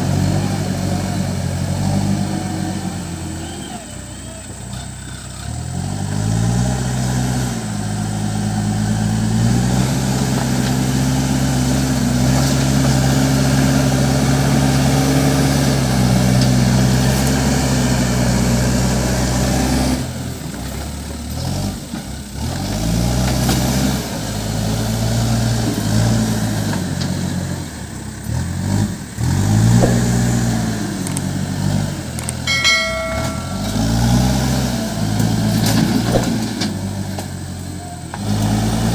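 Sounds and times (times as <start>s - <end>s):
diesel engine revving: 0.0s - 32.5s, 33.3s - 38.9s
steady high tone: 32.5s - 34.7s.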